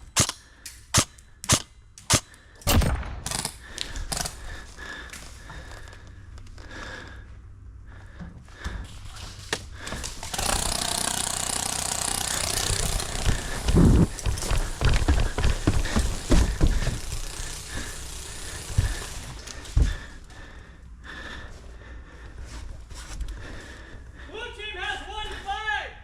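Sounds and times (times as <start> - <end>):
handling and movement noise: 8.1 - 10.9, 12.1 - 20.4.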